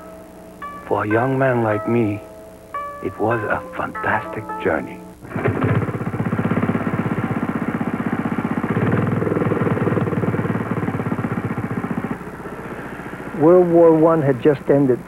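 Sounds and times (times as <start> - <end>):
engine chugging: 5.2 - 15.0.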